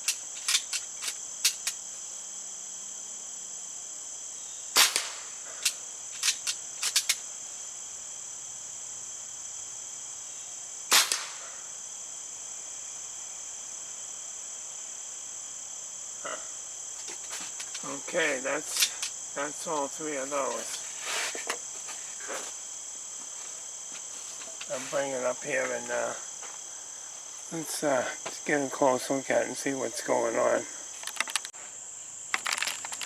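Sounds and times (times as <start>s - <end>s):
crickets chirring: 0.0s - 33.0s
air pistol shots: 4.8s - 7.2s, 10.9s - 11.5s.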